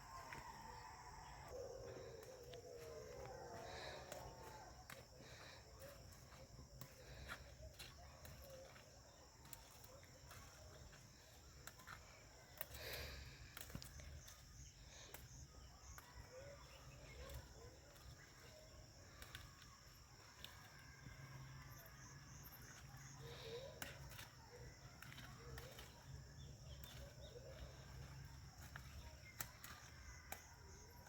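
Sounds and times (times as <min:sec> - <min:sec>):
high insect chorus: 0:00.0 - 0:31.0
soft bird chirps: 0:21.8 - 0:30.6.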